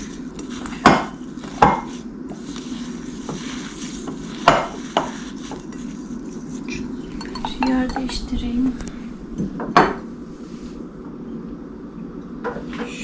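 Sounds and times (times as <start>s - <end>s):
faint scraping: 0.0s - 7.2s
utensil knocking against bowl: 0.4s - 2.0s, 4.1s - 5.9s.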